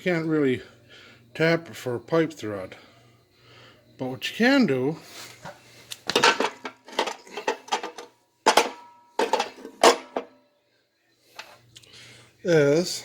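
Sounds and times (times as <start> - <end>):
metal parts and tools clinking: 6.0 - 10.4.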